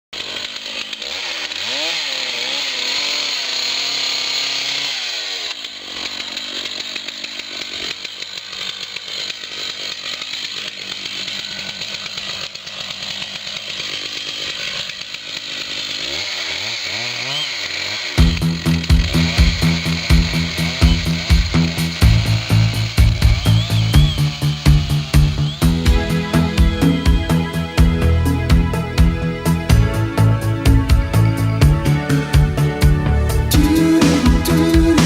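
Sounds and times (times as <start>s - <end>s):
chainsaw cutting wood: 0.1s - 35.0s.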